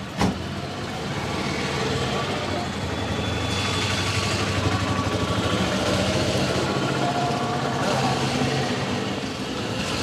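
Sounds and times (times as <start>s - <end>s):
street traffic noise: 0.0s - 10.0s.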